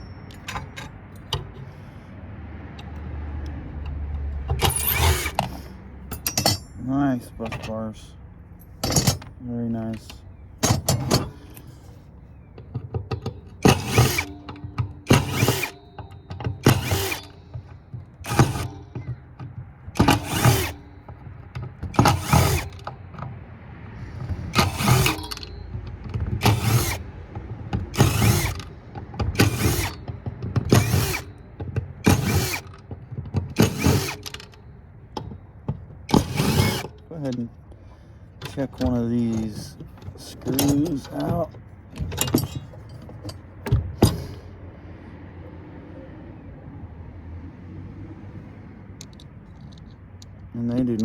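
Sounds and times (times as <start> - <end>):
power drill-driver bursts: 4.6 - 6.6, 13.6 - 17.5, 18.2 - 19.0, 20.0 - 21.1, 21.9 - 22.9, 24.0 - 25.6, 26.4 - 27.1, 27.9 - 28.7, 29.4 - 30.0, 30.6 - 31.4, 32.0 - 32.8, 33.5 - 34.5, 36.1 - 37.0.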